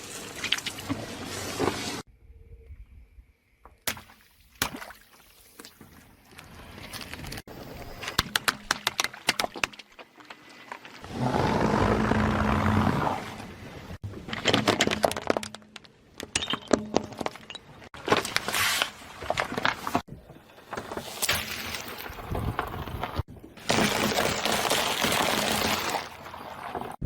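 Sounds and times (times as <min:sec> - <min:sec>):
tyre crushing crunching objects: 0:20.7 - 0:27.0.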